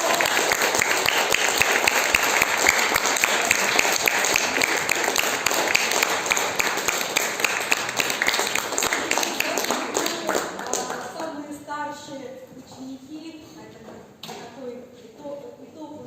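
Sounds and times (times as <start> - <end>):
audience applauding: 0.0 - 11.4.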